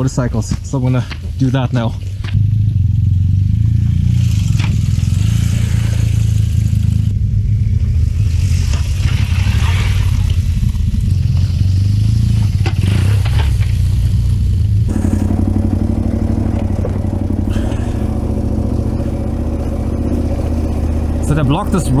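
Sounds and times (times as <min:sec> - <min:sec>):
motorcycle engine running: 0:02.0 - 0:09.0, 0:14.2 - 0:22.0.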